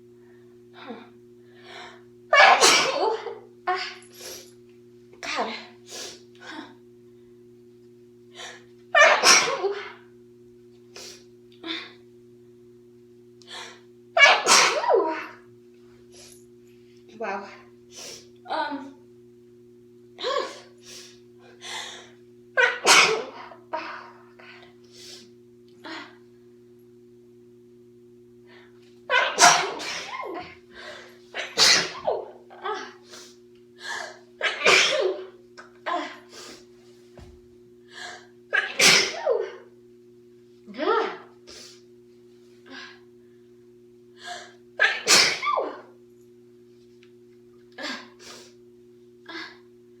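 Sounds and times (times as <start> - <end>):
woman sneezing: 2.4 - 4.4, 8.4 - 10.0, 14.2 - 15.4, 20.2 - 21.1, 22.6 - 23.9, 29.1 - 30.5, 31.4 - 35.3, 38.0 - 39.7, 44.8 - 45.9, 47.8 - 48.5.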